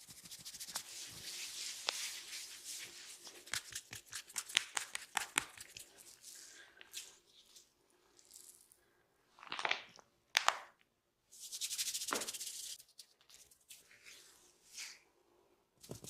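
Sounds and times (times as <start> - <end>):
hands rubbing hair and skin: 0.1 - 7.7, 11.4 - 15.0.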